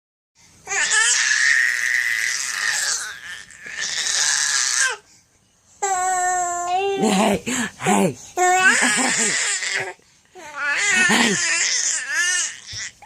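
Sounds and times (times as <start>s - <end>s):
baby raspy squealing: 0.7s - 5.0s, 8.4s - 13.0s.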